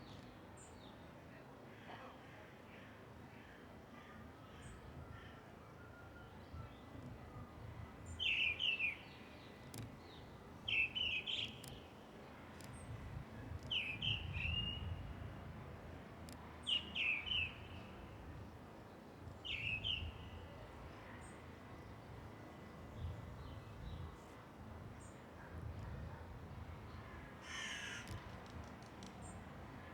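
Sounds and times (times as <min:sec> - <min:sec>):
songbird chirping: 0:08.1 - 0:15.0, 0:16.3 - 0:18.1.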